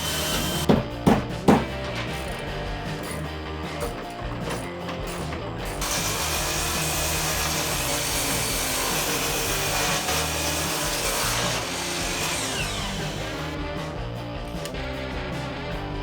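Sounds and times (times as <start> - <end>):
power tool cutting wood: 0.0 - 0.7, 5.8 - 13.6.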